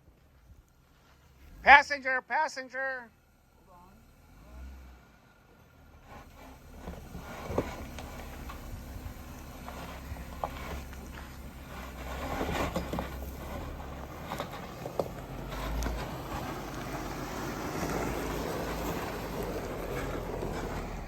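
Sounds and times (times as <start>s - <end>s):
low engine rumble: 0.0s - 21.0s
knocks and rattles: 6.2s - 17.2s.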